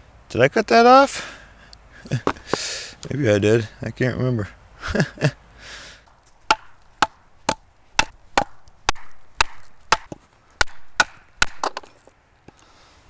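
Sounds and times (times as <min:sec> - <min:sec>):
axe chopping into log: 0:06.4 - 0:12.0.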